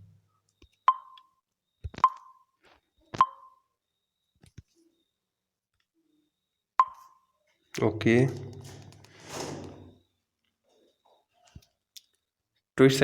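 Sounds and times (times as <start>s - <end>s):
phone touch-feedback pops: 1.9s - 2.2s.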